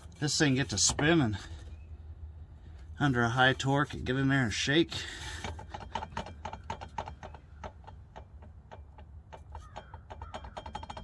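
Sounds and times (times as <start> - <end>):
driveshaft clicking and knocking: 5.2 - 11.0.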